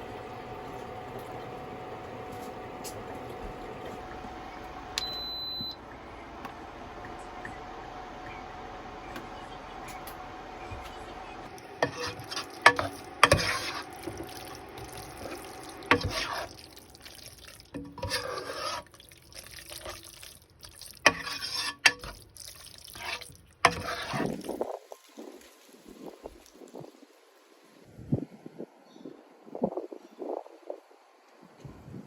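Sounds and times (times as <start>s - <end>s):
liquid splashing and stirring: 11.5s - 26.7s
utensils and dishes clattering: 11.8s - 14.3s.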